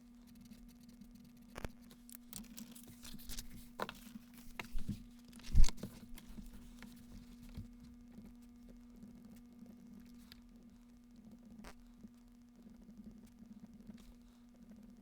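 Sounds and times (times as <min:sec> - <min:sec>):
steady low hum: 0:00.0 - 0:15.0
rustling and tearing: 0:01.6 - 0:07.6.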